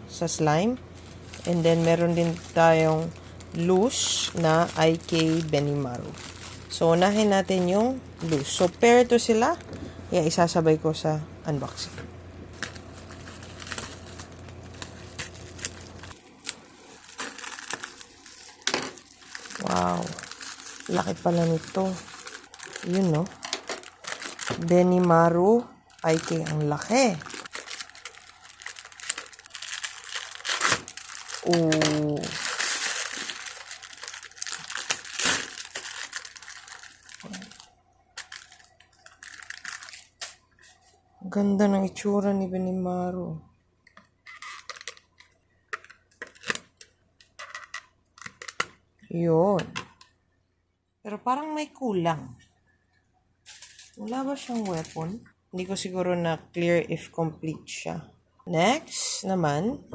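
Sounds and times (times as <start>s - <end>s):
plastic packaging crinkling: 0.6s - 10.3s, 11.6s - 41.0s, 44.2s - 48.8s, 53.4s - 55.2s
small clicks and crackles: 25.8s - 40.4s, 43.8s - 48.8s.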